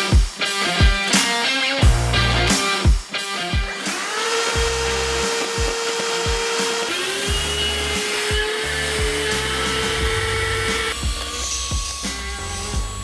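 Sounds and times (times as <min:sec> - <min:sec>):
rock music: 0:00.0 - 0:06.5
stick vacuum motor whine: 0:03.4 - 0:13.0.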